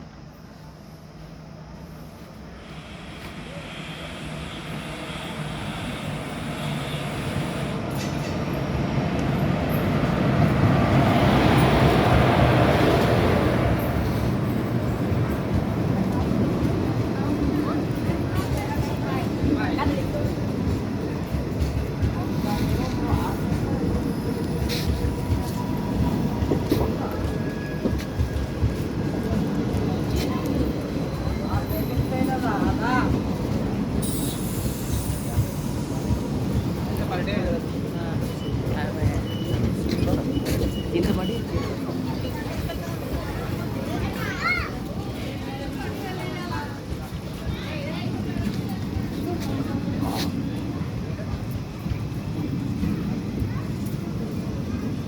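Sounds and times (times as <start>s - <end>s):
train rumbling on rails: 0.0s - 55.0s.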